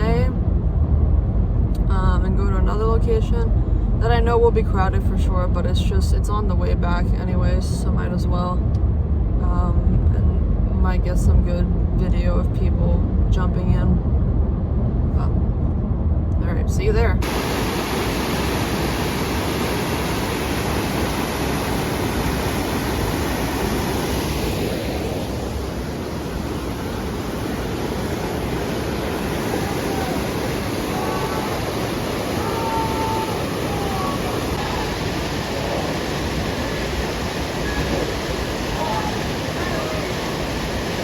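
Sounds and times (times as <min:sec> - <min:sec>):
waterfall rushing: 0:17.2 - 0:41.0.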